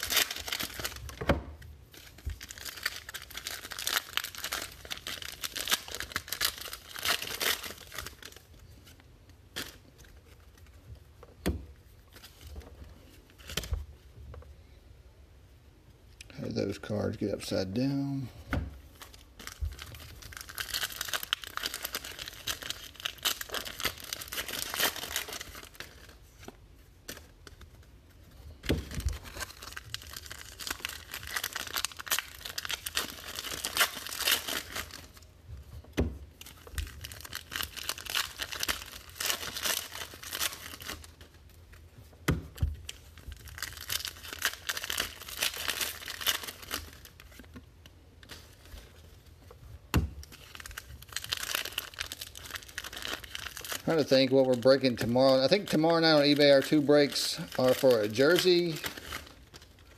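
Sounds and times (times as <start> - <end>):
wrappers tearing and crinkling: 0.0 - 1.2, 1.9 - 10.7, 18.9 - 27.8, 28.4 - 35.3, 36.3 - 42.0, 42.8 - 47.6, 50.2 - 59.9.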